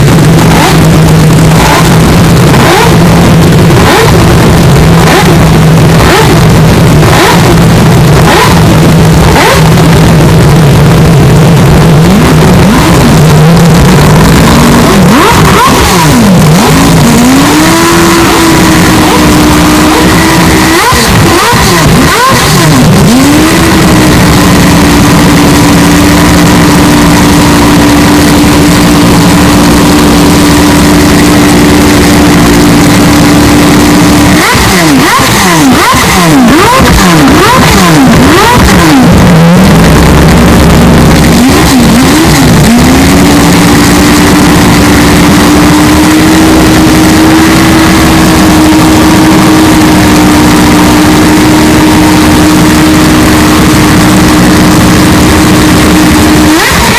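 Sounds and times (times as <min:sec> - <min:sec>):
race car engine revving: 0:00.0 - 0:56.9.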